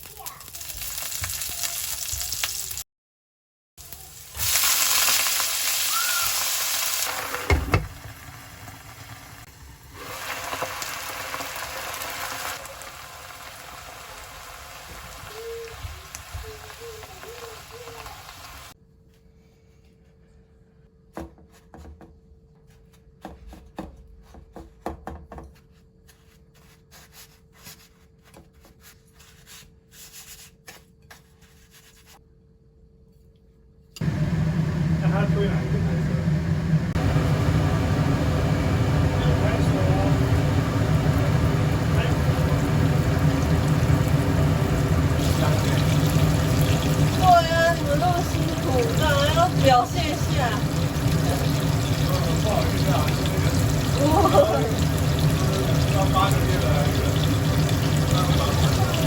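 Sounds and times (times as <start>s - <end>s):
food sizzling in hot oil: 0.0s - 2.8s, 3.8s - 18.8s, 36.5s - 59.0s.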